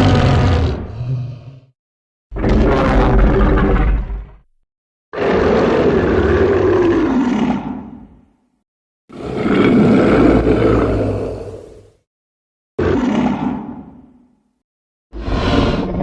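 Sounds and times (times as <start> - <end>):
monster roars: 0.0 - 1.7, 2.4 - 4.4, 9.1 - 11.9.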